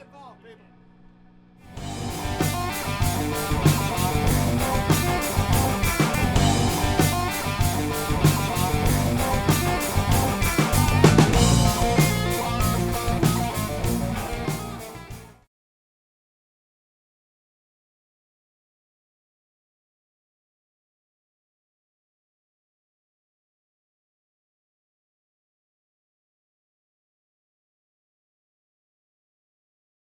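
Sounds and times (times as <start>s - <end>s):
rock band playing: 1.7s - 15.4s.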